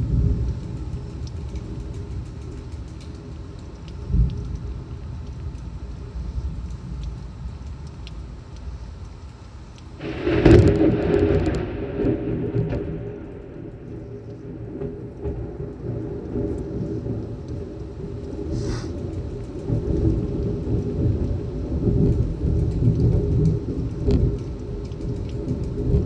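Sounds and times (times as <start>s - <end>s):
raindrops ticking: 0.0s - 26.0s
heavy rain: 9.6s - 26.0s
rolling thunder: 10.0s - 26.0s.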